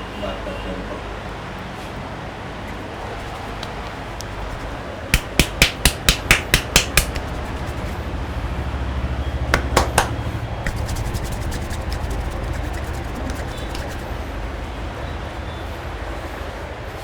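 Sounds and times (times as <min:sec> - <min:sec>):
steady low hum: 0:02.9 - 0:16.7
light rapid tapping: 0:03.2 - 0:08.1, 0:09.5 - 0:14.2
hands clapping on a head: 0:05.2 - 0:07.8, 0:09.5 - 0:14.0.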